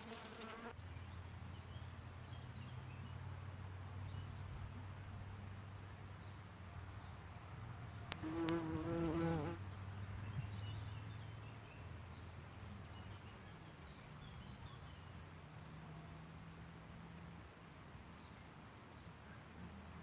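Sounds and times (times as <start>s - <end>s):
insect buzzing: 0.0s - 0.8s, 8.1s - 9.6s.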